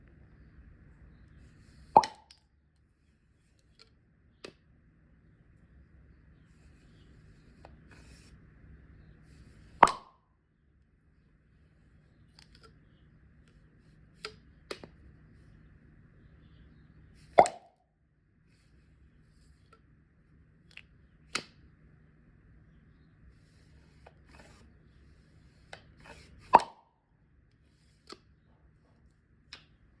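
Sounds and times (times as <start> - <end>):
sharp pops: 1.9 - 2.4, 9.8 - 10.2, 17.4 - 17.7, 26.4 - 26.9.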